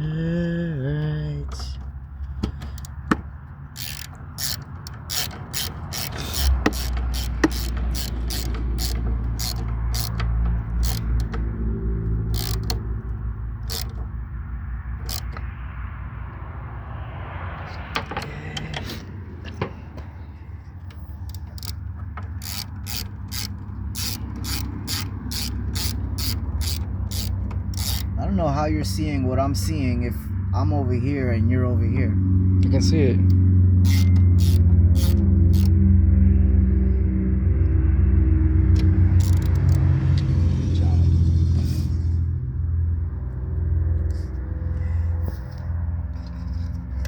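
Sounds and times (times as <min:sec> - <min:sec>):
hand ratchet clicking: 0:01.4 - 0:14.1, 0:15.0 - 0:15.5, 0:20.9 - 0:28.2, 0:33.2 - 0:35.8, 0:38.7 - 0:40.3.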